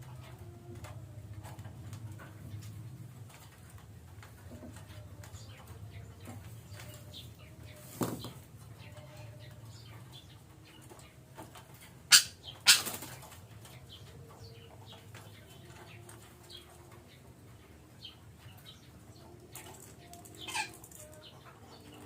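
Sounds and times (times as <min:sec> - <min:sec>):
parakeets squawking harshly: 0:12.1 - 0:13.1, 0:20.4 - 0:20.8.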